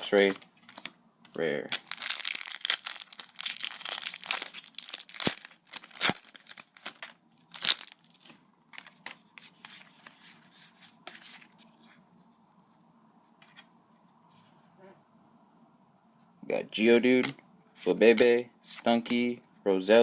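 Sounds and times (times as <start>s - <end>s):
foil wrapper crinkling and tearing: 1.7s - 9.1s.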